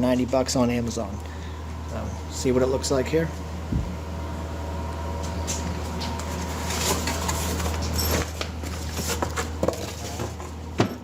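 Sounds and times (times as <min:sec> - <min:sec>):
steady low hum: 0:00.0 - 0:10.8
packaging rustling and crinkling: 0:06.0 - 0:10.4.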